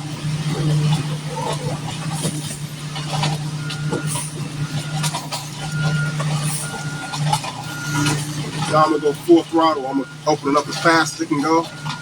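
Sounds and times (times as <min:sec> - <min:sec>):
diesel truck engine running: 0:00.0 - 0:12.0
reversing alarm beeping: 0:02.5 - 0:12.0.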